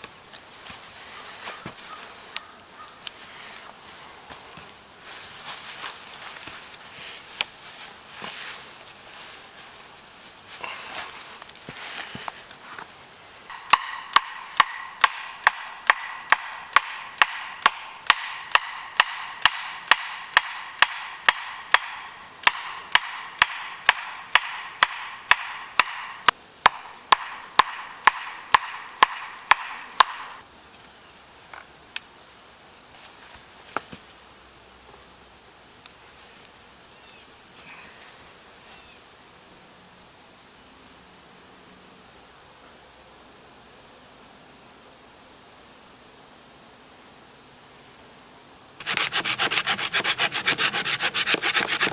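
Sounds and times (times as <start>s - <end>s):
sharp wooden knocks: 13.5s - 30.4s, 48.8s - 51.9s.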